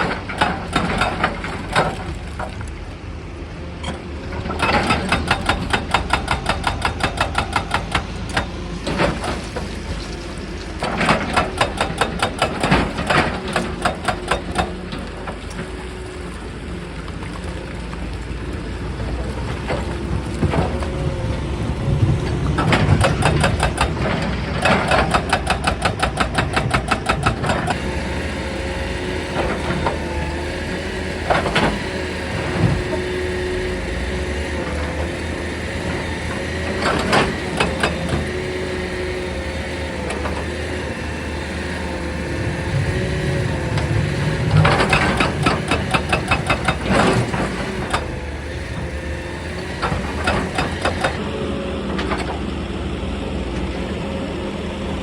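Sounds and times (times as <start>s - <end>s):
hydraulic breaker hammering stone: 0.0s - 2.3s, 4.4s - 15.6s, 21.9s - 51.2s
excavator engine running: 0.0s - 55.0s.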